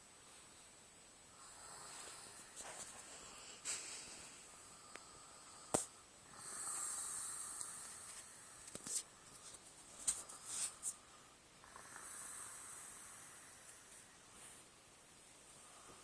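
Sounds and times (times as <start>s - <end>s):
snoring breaths: 1.3s - 8.8s, 10.1s - 14.8s, 15.4s - 16.0s.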